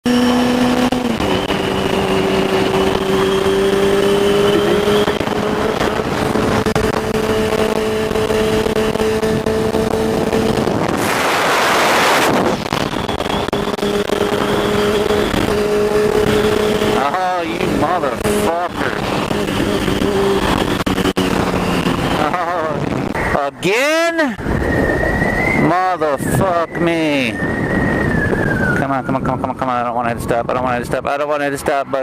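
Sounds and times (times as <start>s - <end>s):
motorcycle engine running: 0.0s - 23.5s
loud rush of noise: 0.0s - 32.0s.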